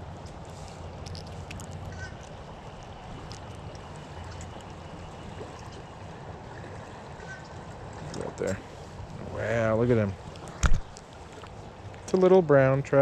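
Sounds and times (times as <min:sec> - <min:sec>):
creek water running: 0:00.0 - 0:13.0
small splashes and clicks: 0:00.2 - 0:05.9, 0:06.6 - 0:08.7, 0:10.2 - 0:12.3.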